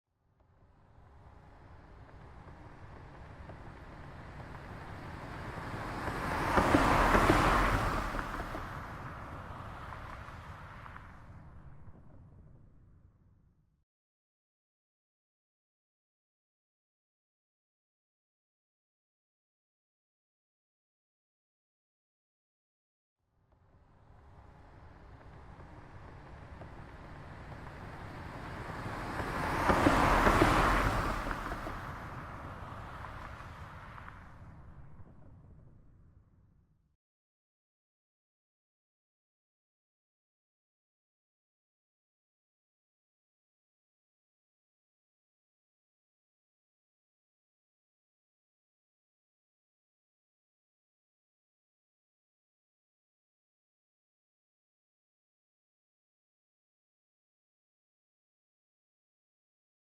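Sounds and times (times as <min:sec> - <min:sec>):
car passing by: 0:00.8 - 0:12.9, 0:23.6 - 0:36.2.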